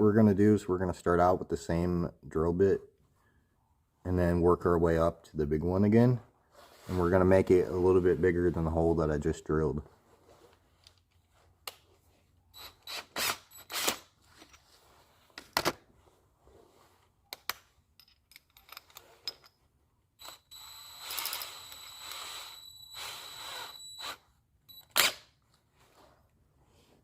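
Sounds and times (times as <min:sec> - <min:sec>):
electric drill boring glass: 0:20.2 - 0:24.2.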